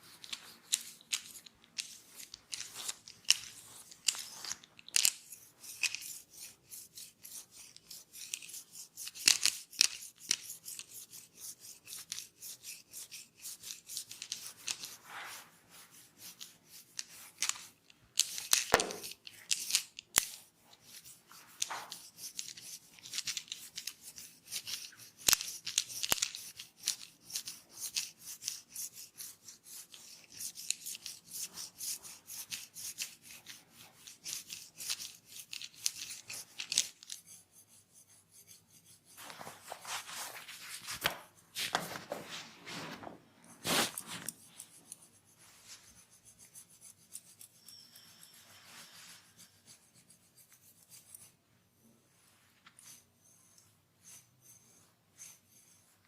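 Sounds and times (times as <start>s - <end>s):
hands scrubbing hair: 38.8s - 46.1s.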